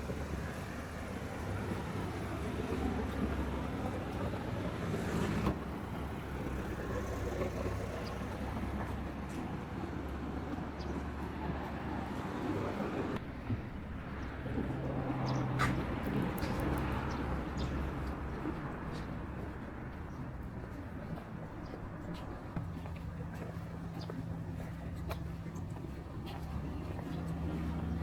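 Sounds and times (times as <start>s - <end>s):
outdoor ambience: 0.0s - 28.0s.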